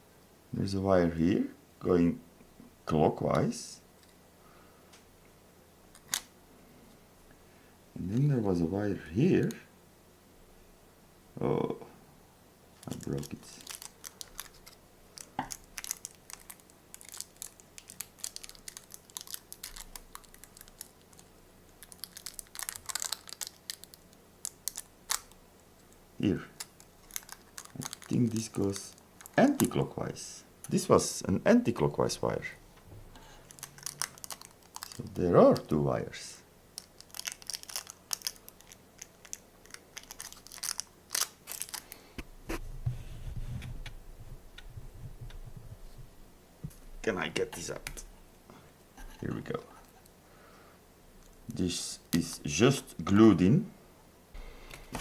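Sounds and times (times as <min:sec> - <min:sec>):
thin plastic crinkling and clicking: 0:05.9 - 0:06.3, 0:12.8 - 0:29.8, 0:33.2 - 0:35.7, 0:36.7 - 0:42.3
plastic and wire crackling: 0:12.8 - 0:26.0, 0:26.6 - 0:29.8, 0:33.2 - 0:35.1, 0:36.8 - 0:42.6.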